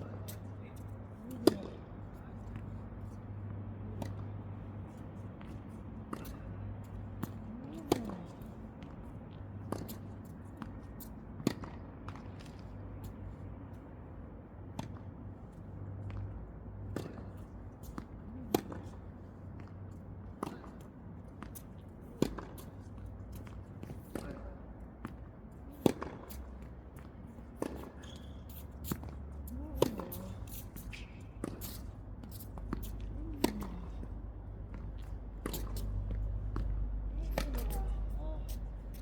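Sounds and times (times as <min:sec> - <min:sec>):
tennis balls struck by rackets: 0:01.3 - 0:02.8, 0:19.6 - 0:39.0.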